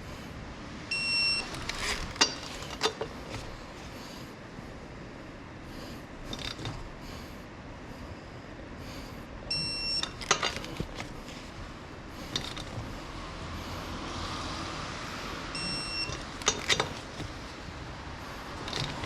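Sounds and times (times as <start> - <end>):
high electronic beep: 0.9 - 1.5, 9.5 - 10.1, 15.6 - 16.2.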